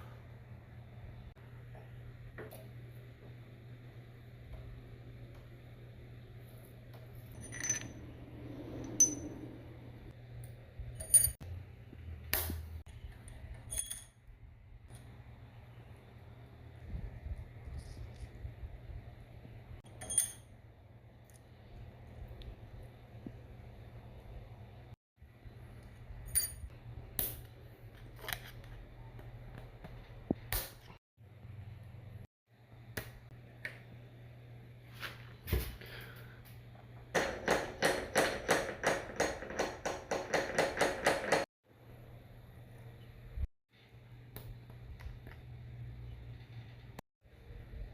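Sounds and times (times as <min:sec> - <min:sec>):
steady low hum: 0:00.0 - 0:37.6
metal parts clinking: 0:07.2 - 0:08.1.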